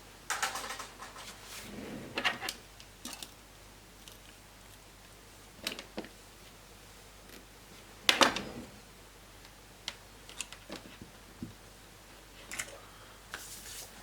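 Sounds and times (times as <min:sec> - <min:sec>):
knocks and rattles: 0:00.3 - 0:01.6.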